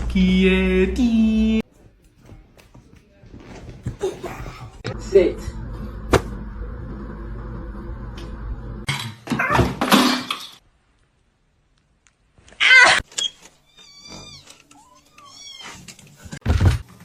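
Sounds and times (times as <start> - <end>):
cats crying and meowing: 13.7 - 16.2.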